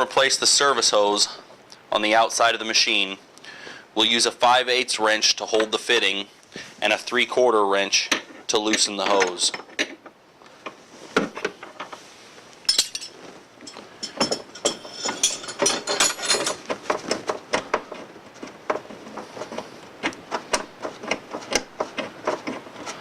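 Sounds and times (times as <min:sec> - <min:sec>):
wrenches clinking on metal fitting: 0:08.0 - 0:10.0, 0:12.7 - 0:16.7.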